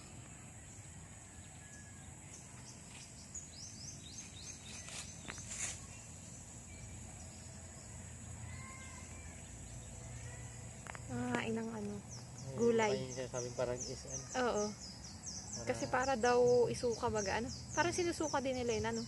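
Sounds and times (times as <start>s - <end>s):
high insect drone: 0.0s - 19.0s
falling bird chirps: 1.7s - 7.0s
brief rustle: 4.6s - 6.0s.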